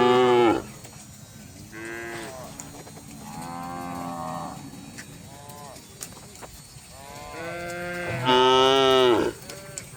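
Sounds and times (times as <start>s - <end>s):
cattle mooing: 0.0s - 0.7s, 1.7s - 4.7s, 7.0s - 9.9s.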